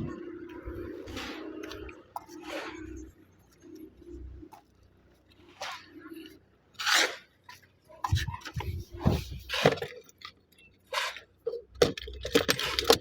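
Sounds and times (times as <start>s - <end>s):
handling knocks and rustles: 7.5s - 13.0s.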